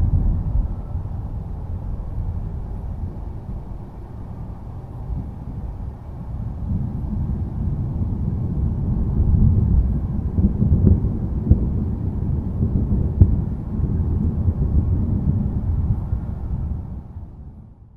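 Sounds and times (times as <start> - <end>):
distant thunder rumbling: 0.0 - 17.0.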